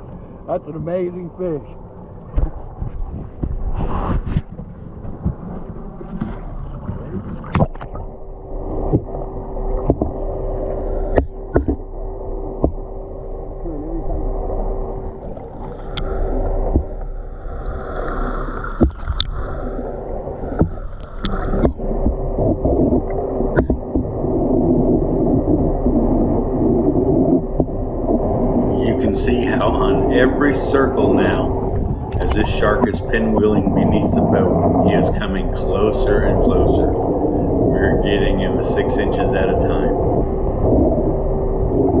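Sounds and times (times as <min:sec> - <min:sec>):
boat engine humming: 0:00.0 - 0:03.8, 0:04.4 - 0:42.0
water and hull noise: 0:00.0 - 0:42.0
sharp knocks on boat: 0:12.6 - 0:12.8.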